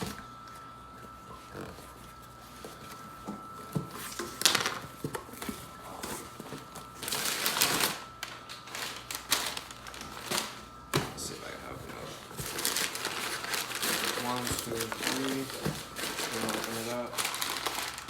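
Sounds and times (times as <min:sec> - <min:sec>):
cardboard rustling and scraping: 0:01.1 - 0:18.0.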